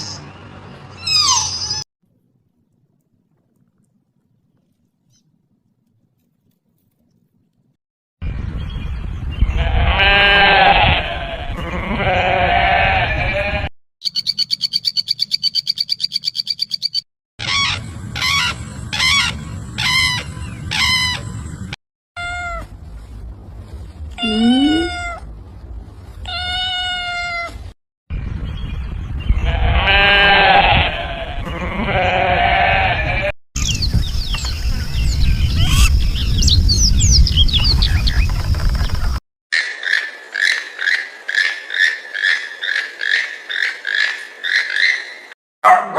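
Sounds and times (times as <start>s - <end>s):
animal bleating: 9.5s - 13.7s, 29.4s - 33.3s.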